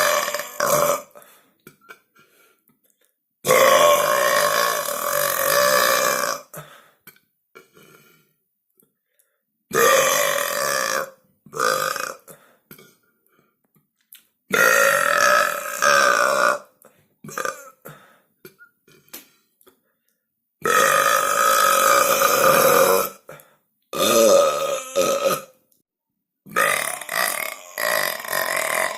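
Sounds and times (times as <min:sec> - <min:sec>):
person belching: 0:00.0 - 0:02.0, 0:03.4 - 0:06.6, 0:09.7 - 0:13.0, 0:14.5 - 0:17.9, 0:20.6 - 0:25.6, 0:26.5 - 0:28.9.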